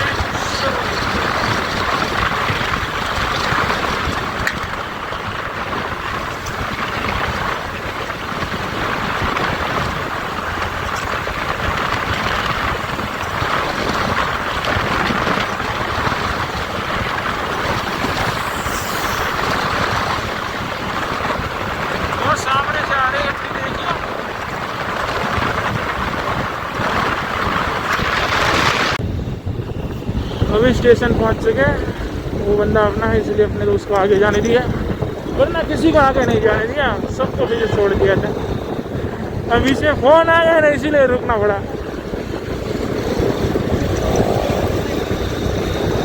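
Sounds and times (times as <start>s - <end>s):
motorcycle engine running: 0.0s - 22.2s
wind and road rush: 0.0s - 46.0s.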